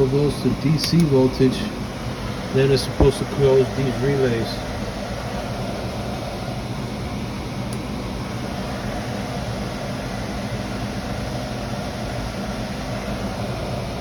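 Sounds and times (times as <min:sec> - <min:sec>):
machinery drone with electrical hum: 0:00.0 - 0:14.0.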